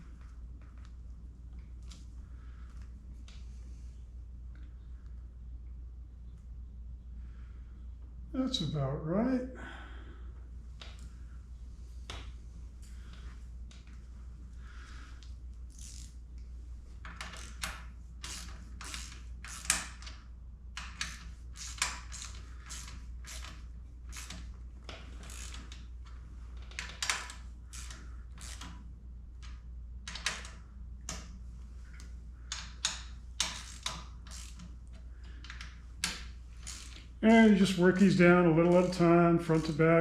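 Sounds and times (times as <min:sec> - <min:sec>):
steady low hum: 0:00.0 - 0:40.0
ratchet wrench clicking: 0:15.7 - 0:16.2, 0:17.1 - 0:20.1, 0:20.8 - 0:24.5, 0:25.2 - 0:25.8, 0:26.8 - 0:28.8, 0:32.5 - 0:34.8, 0:35.5 - 0:37.1, 0:38.6 - 0:39.8.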